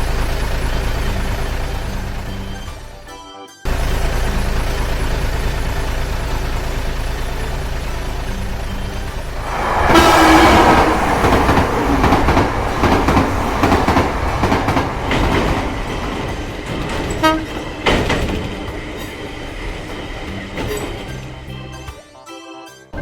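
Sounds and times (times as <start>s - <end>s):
train wheels rattling: 3.7s - 21.8s
short pitched train toot: 9.1s - 14.7s, 17.0s - 18.0s
train horn blast: 9.1s - 15.9s, 16.9s - 18.1s.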